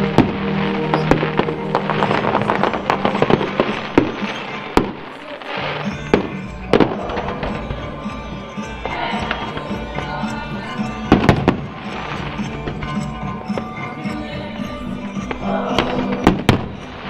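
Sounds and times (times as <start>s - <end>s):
fireworks crackling: 0.0s - 9.5s
music playing: 0.0s - 17.0s.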